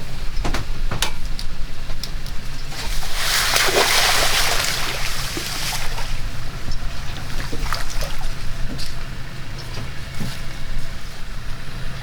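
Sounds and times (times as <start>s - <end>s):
boat motor running: 0.0s - 12.0s
water splash: 2.7s - 6.4s, 7.2s - 8.5s.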